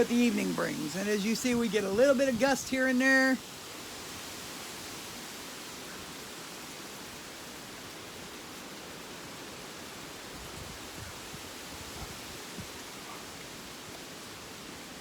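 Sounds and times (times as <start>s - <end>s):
wind gusting through trees: 0.0s - 15.0s
wind buffeting microphone: 10.4s - 12.8s.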